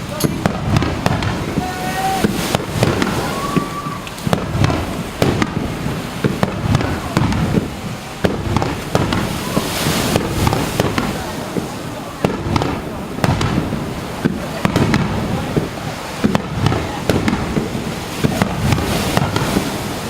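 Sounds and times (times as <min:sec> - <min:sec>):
fireworks bangs and crackling: 0:00.0 - 0:20.0.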